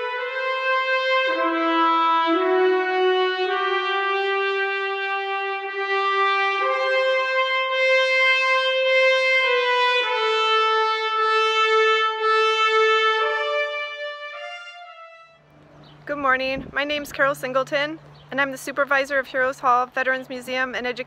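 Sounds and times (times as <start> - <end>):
slow solo trumpet melody: 0.0 - 15.5.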